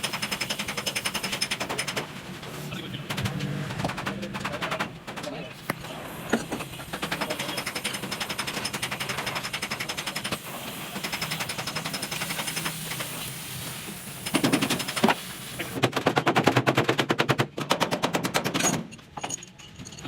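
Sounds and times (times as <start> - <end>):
power tool hammering rapidly: 0.0 - 2.2, 6.4 - 13.1, 14.2 - 16.8.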